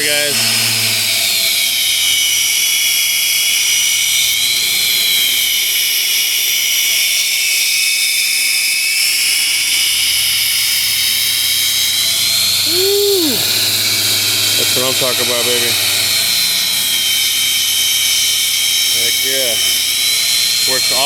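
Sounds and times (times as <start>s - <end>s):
belt sander whining: 0.0s - 4.2s, 10.0s - 21.0s.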